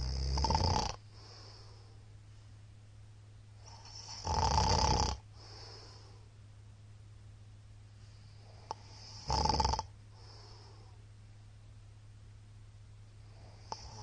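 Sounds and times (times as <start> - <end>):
man snoring: 0.0 - 1.0, 3.7 - 5.2, 8.7 - 9.9, 13.5 - 14.0
soft breath: 1.0 - 2.6, 5.3 - 6.4, 7.9 - 9.3, 10.1 - 11.1, 13.1 - 14.0.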